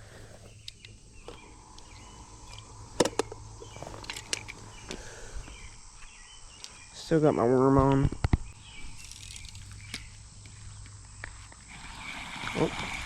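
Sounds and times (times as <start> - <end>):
bait aerator humming: 0.0 - 7.2, 8.5 - 13.0
sharp clicks and knocks: 2.5 - 4.6.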